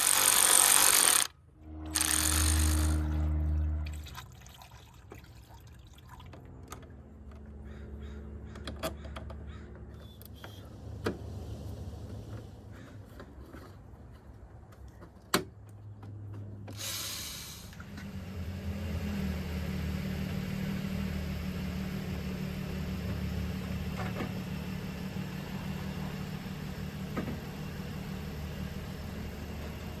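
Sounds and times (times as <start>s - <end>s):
brief hiss: 16.8s - 17.8s
car engine idling: 17.8s - 30.0s.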